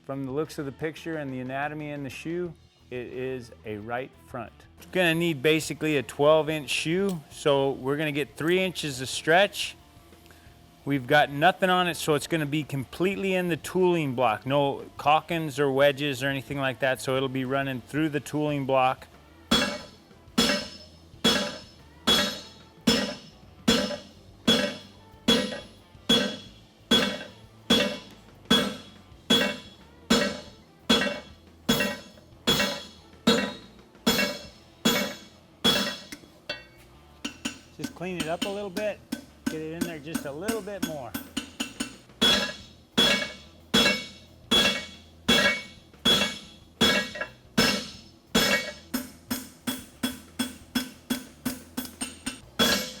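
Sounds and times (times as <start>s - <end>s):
hammer striking steel bar: 19.5s - 53.0s.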